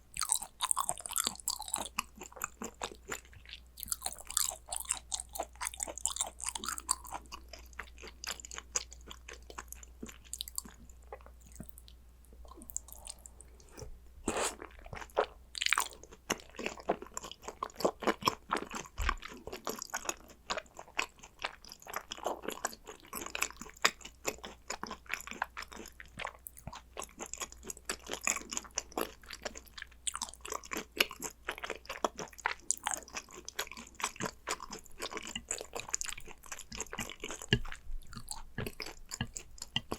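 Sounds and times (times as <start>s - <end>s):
chewing with crisp crunching: 0.0s - 39.9s.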